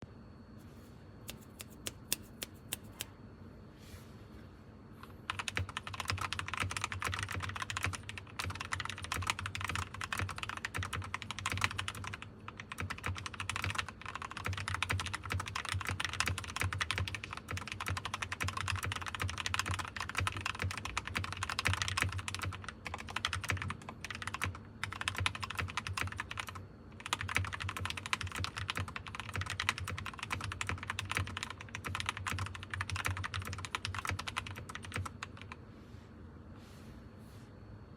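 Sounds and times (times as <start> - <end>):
typing on a mechanical keyboard: 5.3 - 35.6.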